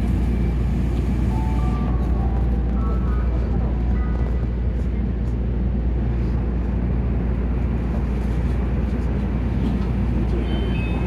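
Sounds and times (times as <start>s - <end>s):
monorail train low rumble: 0.0s - 11.0s.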